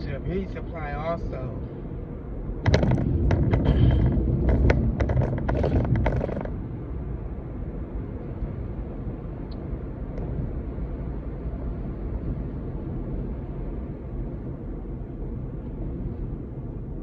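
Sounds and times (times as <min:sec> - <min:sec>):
road rumble inside car: 0:00.0 - 0:17.0
sharp clicks and knocks: 0:02.6 - 0:06.6.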